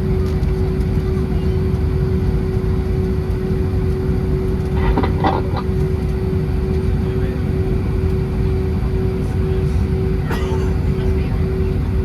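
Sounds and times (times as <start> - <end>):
aircraft engine and airflow rumble: 0.0 - 12.0
steady cabin hum: 2.0 - 12.0.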